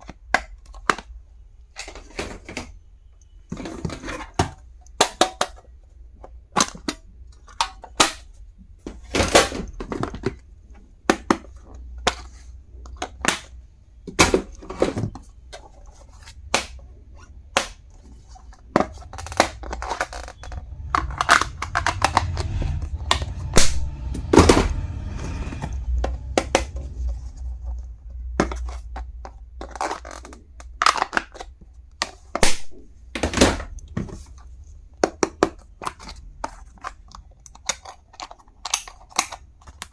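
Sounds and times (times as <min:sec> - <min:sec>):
items clicking and tapping: 0:00.0 - 0:39.9
low handling rumble: 0:18.6 - 0:29.3.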